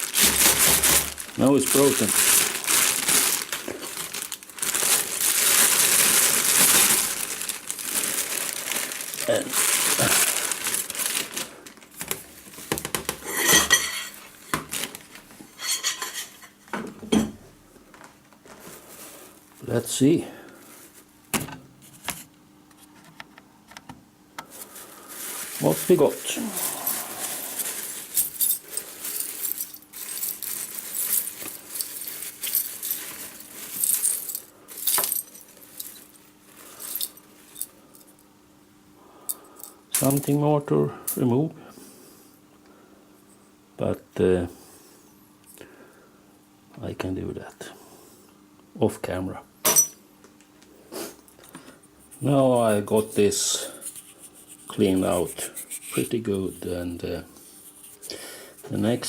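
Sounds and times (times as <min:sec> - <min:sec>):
faint steady hum: 0:00.0 - 0:59.0
glass shards clinking: 0:13.2 - 0:14.2, 0:15.6 - 0:16.6, 0:49.7 - 0:50.0.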